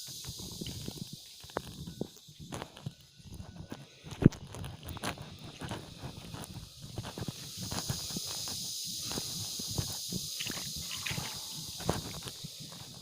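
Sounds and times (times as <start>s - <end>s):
irregular footsteps: 0.0s - 13.0s
rustling: 0.0s - 13.0s
steady high hiss: 0.0s - 13.0s.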